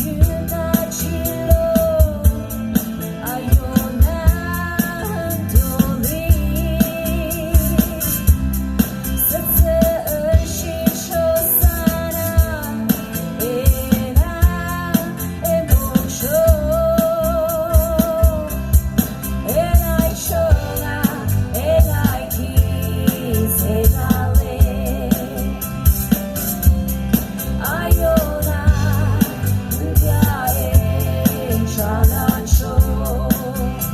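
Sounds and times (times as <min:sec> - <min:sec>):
person singing with vibrato: 0:00.0 - 0:26.1, 0:27.3 - 0:33.9
steady drum beat: 0:00.0 - 0:33.9.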